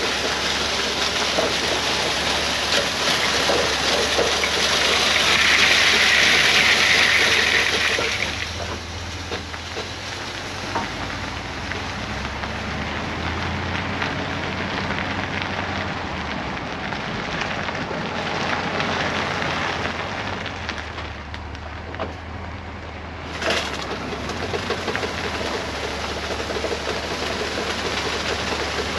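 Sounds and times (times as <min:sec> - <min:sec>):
low engine hum: 0:00.0 - 0:28.9
tyre and road noise: 0:00.0 - 0:28.9.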